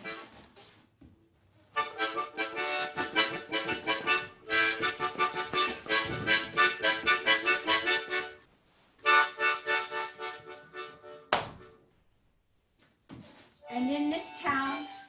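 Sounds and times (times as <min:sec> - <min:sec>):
instrumental rhythmic chords: 0:01.8 - 0:11.8.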